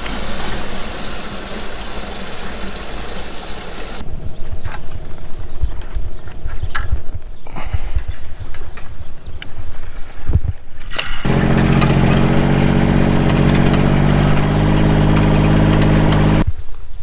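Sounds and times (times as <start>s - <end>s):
farm vehicle engine running: 0.0s - 4.0s, 11.3s - 16.4s
low knocks and rattles: 11.3s - 16.4s.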